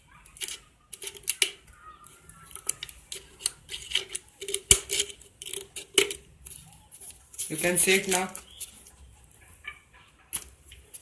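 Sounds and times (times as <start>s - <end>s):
paper-covered can clicking and crackling: 0.2s - 9.0s.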